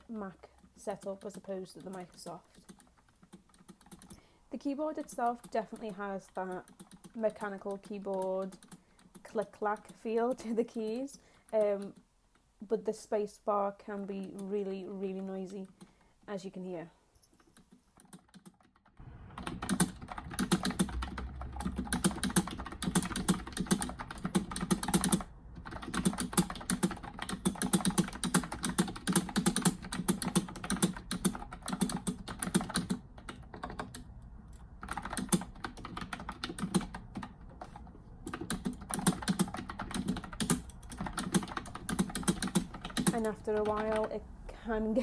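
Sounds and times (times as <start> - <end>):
keyboard keystrokes clacking: 0.6 - 4.2, 5.0 - 10.0, 17.6 - 44.2.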